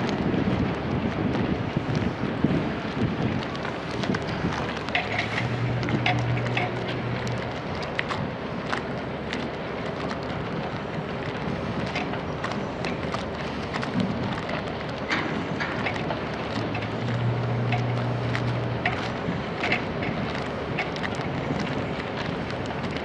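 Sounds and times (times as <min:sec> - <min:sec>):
diesel engine hum: 0:00.0 - 0:23.0
steady rushing noise: 0:00.0 - 0:23.0.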